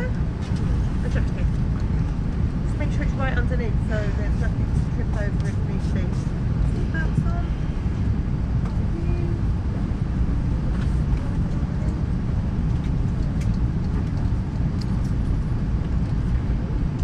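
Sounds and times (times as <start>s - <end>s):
aircraft engines at taxi power: 0.0s - 17.0s
airframe rolling rumble: 0.0s - 17.0s.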